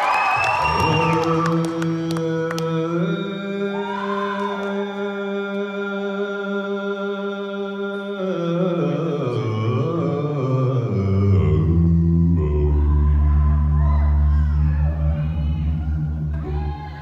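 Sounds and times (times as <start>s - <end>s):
a cappella group singing: 0.6s - 17.0s
bass voice sliding down: 11.2s - 17.0s.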